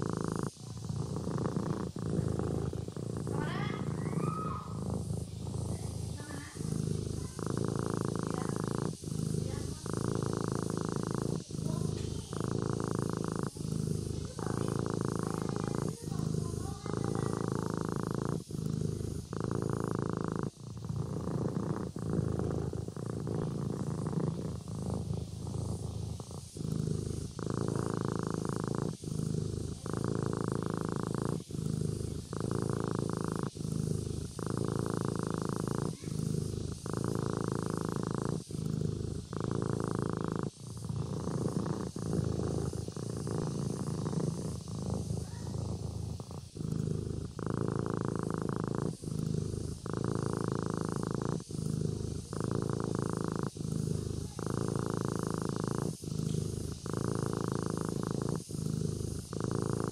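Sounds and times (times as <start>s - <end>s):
kitten purring: 0.0s - 59.9s.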